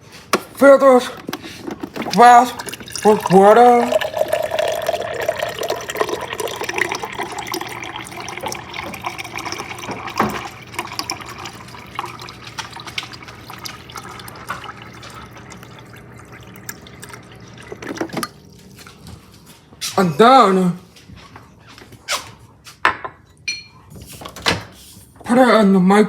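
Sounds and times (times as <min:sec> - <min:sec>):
water running into a glass: 0:01.8 - 0:18.6.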